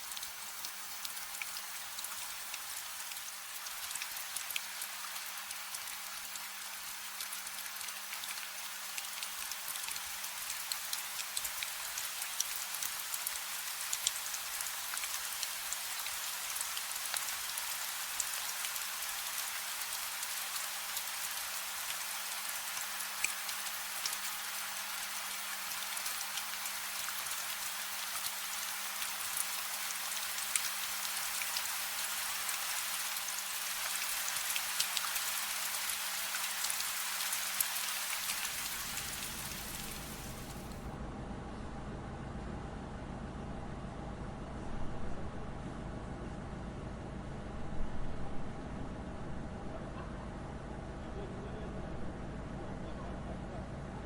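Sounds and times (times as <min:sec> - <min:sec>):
rain on hard surfaces: 0:00.0 - 0:40.9
faint low hum: 0:40.4 - 0:54.0.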